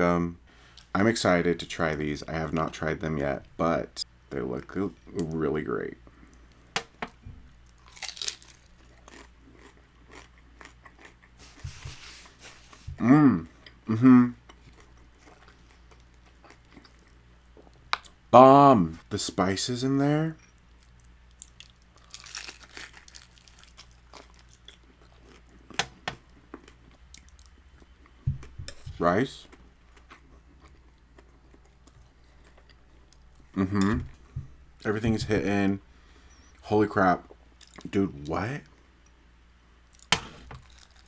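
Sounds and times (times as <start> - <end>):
crunching and chewing taco: 7.6 - 13.8, 14.4 - 18.2, 20.4 - 34.9, 39.9 - 41.0
person biting and chewing: 7.8 - 11.6, 21.4 - 25.5.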